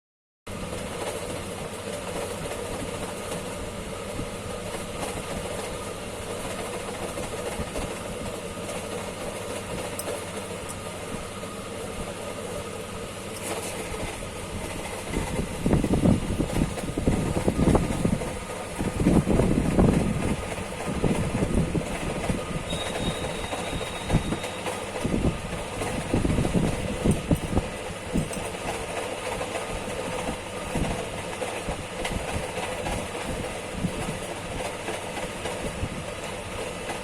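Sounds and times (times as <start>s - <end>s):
mechanical hum with tones: 22.5s - 25.4s.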